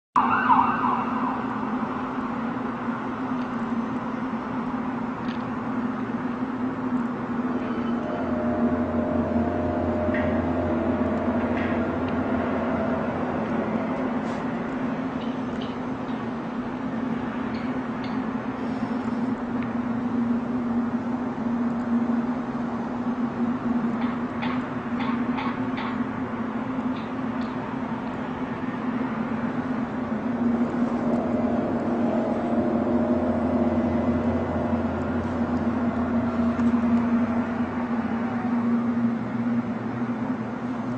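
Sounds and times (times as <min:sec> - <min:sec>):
low droning hum: 0:00.4 - 0:40.9
deep rumble: 0:04.6 - 0:25.0, 0:27.4 - 0:40.9.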